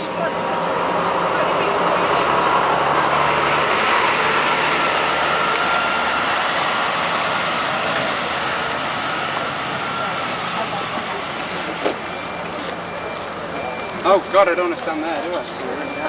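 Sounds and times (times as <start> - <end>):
loud steady rushing noise: 0.0 - 12.3.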